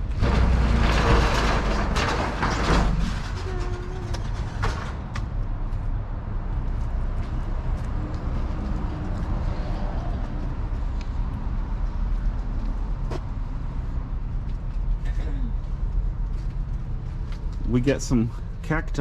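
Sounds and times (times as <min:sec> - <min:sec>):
metal roll-up door rattling: 0:00.0 - 0:05.2.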